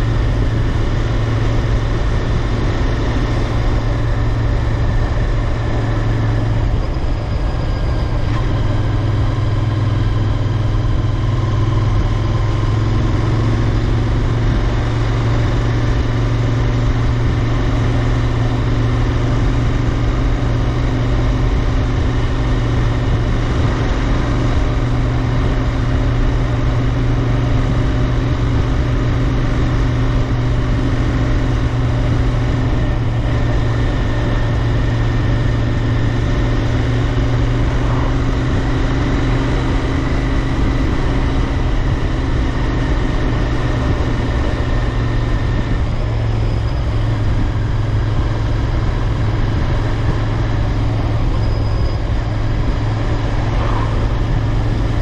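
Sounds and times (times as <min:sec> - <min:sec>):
motorcycle engine running: 0:00.0 - 0:55.0
wide rushing noise: 0:35.8 - 0:40.4, 0:52.0 - 0:55.0.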